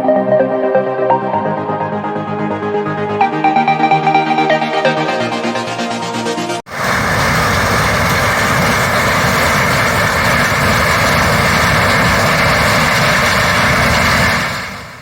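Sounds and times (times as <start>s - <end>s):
diesel engine running: 6.7s - 15.0s.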